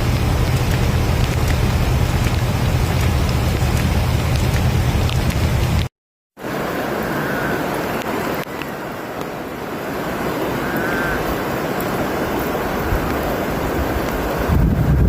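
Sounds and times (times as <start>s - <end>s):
rushing water: 0.0s - 15.0s
wind on microphone: 10.5s - 15.0s.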